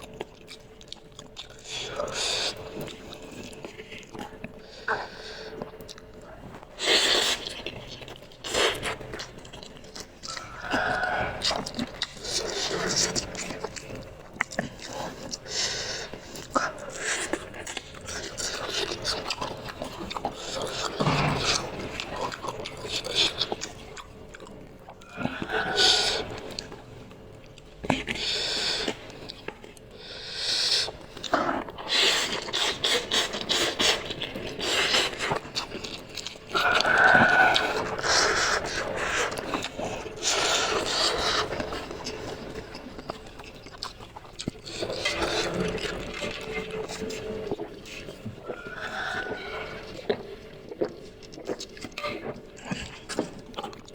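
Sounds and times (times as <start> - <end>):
chewing noodles: 0.0 - 53.9.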